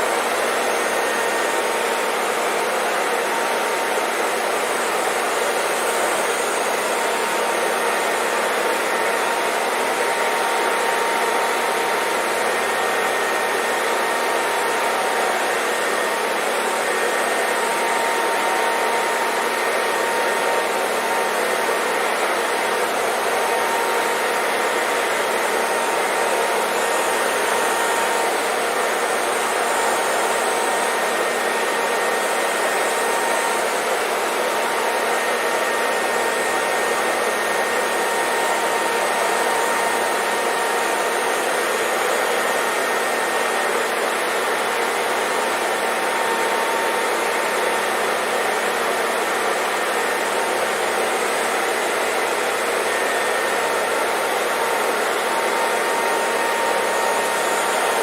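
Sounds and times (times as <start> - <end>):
hair dryer blowing: 0.0 - 58.0.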